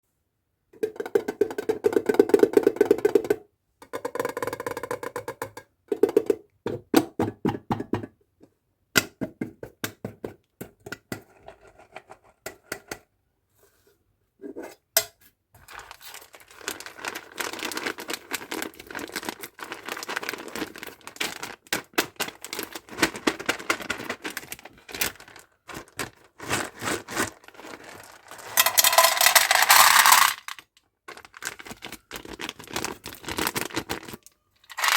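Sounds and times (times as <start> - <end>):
packaging tearing rustle: 15.6 - 29.1
plastic packaging clicks and crinkles: 15.6 - 34.9.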